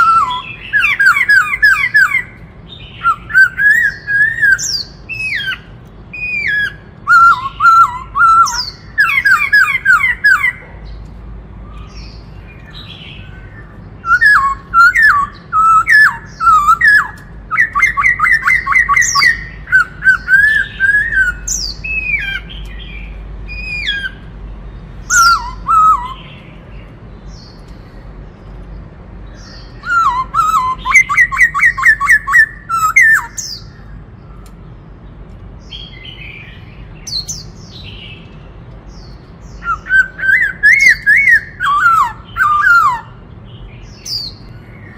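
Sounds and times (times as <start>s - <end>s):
bird singing whistled phrases: 0.0s - 10.6s, 11.7s - 24.3s, 25.0s - 26.6s, 29.4s - 34.4s, 39.0s - 43.2s.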